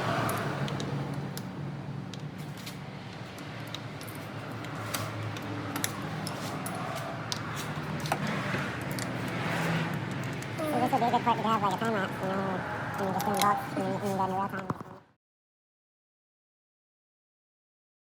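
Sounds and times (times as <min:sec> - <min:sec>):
metallic clicks of hand tools: 0:02.1 - 0:10.6.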